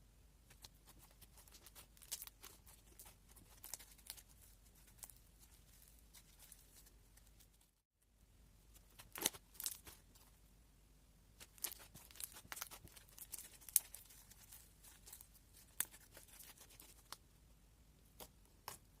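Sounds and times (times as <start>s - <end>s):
sticky slime crackles and pops: 8.9s - 10.0s, 11.4s - 17.2s.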